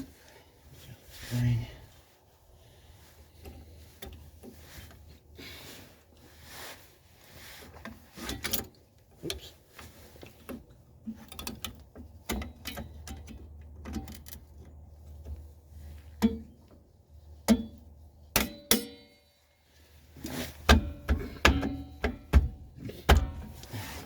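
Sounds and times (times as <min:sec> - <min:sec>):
low steady hum: 0:00.0 - 0:24.0
metal tools clanking: 0:18.4 - 0:19.4.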